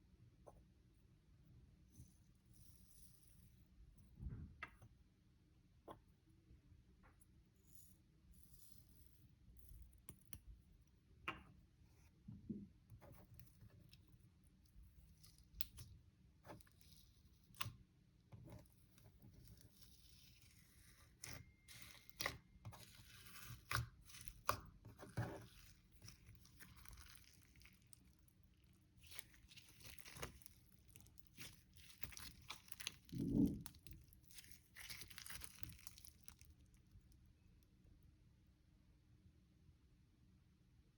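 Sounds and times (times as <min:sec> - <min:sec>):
slime squished by hand: 0:19.4 - 0:36.8.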